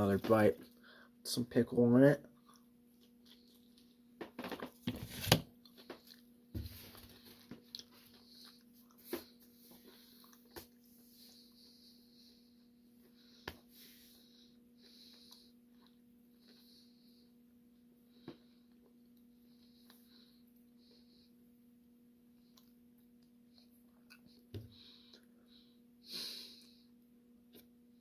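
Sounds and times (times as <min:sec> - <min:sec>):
faint steady hum: 0:00.0 - 0:28.0
person chewing pizza: 0:02.3 - 0:06.4, 0:07.0 - 0:11.8, 0:14.5 - 0:17.0, 0:22.3 - 0:25.3.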